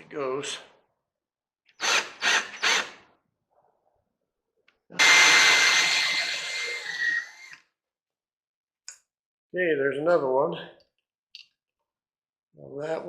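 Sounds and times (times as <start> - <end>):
electric drill whining: 1.8 - 3.0, 5.0 - 7.6.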